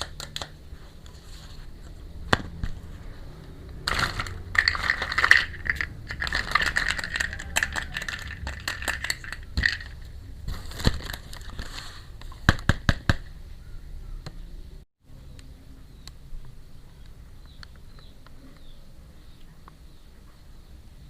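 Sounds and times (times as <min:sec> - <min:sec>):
plastic toy pieces rustling and scraping: 0:03.8 - 0:12.2.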